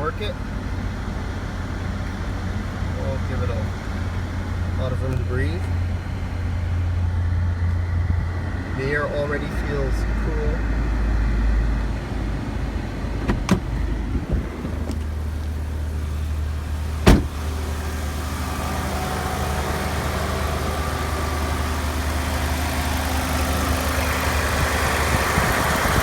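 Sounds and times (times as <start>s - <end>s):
car engine idling: 0.0s - 26.0s
air conditioning running: 11.7s - 26.0s.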